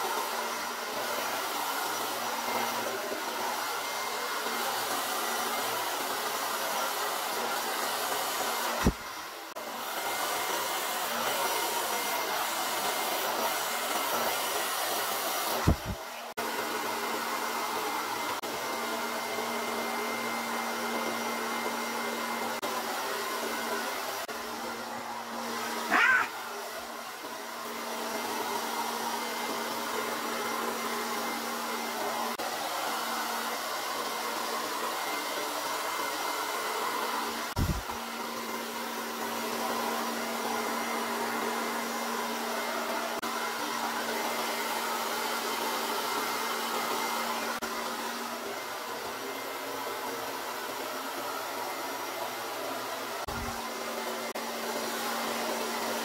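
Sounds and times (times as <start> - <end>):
hair dryer blowing: 0.0 - 56.0.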